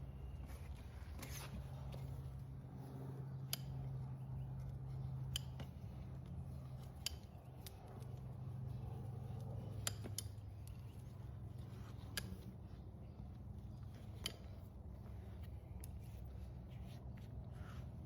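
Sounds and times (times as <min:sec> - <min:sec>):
low steady hum: 0:00.0 - 0:18.0
hoof nippers snipping: 0:00.6 - 0:18.0.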